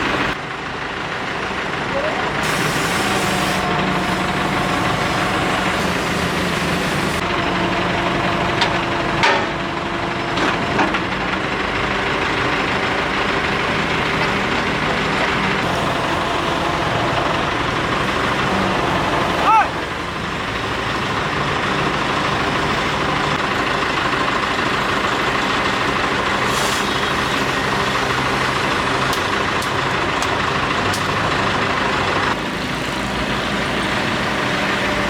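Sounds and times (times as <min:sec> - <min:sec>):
diesel engine running: 0:00.0 - 0:35.0.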